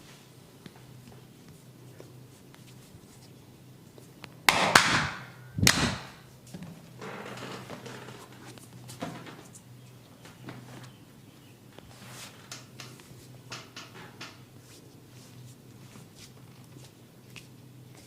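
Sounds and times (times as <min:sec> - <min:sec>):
hands rubbing hair: 0:00.0 - 0:04.2, 0:14.5 - 0:18.0.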